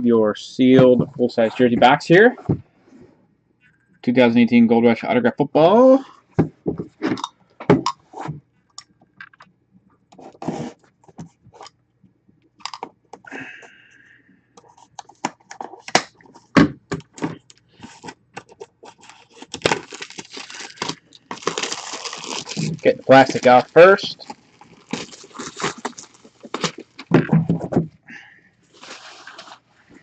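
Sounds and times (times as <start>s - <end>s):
plastic wrapping crinkling: 17.5s - 27.2s.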